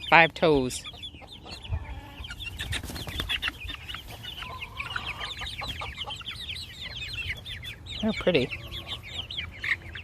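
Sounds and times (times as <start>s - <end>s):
young chickens clucking and cheeping: 0.0s - 10.0s.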